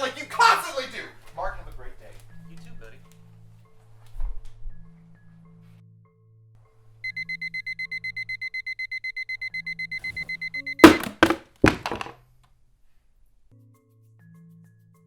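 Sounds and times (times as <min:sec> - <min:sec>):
phone alarm beeping rapidly: 0:07.1 - 0:10.9
loud thumps: 0:10.8 - 0:12.1.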